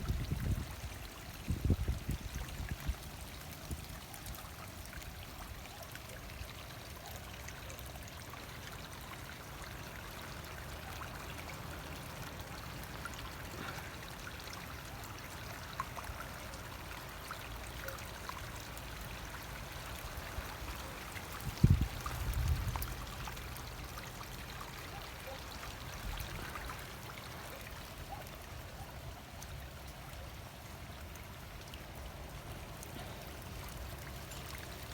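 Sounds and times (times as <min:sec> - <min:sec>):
runoff water pouring: 0:00.0 - 0:34.9.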